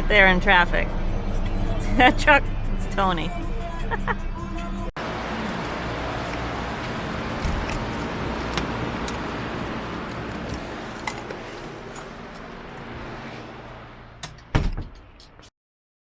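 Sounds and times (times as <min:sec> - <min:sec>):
car road noise: 0:05.0 - 0:15.5.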